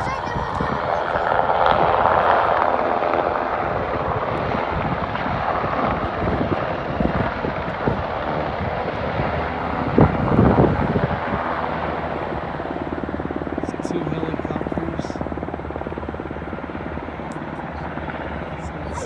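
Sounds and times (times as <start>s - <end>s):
helicopter rotor and engine: 0.0s - 19.0s
wind buffeting microphone: 0.0s - 19.0s.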